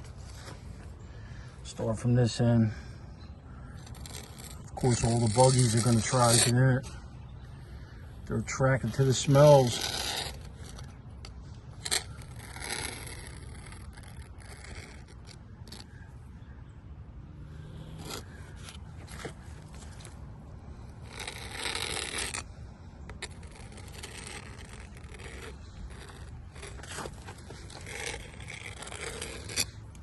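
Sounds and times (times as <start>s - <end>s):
caulk spreader scraping: 3.5s - 7.0s, 8.3s - 16.1s, 17.9s - 30.0s.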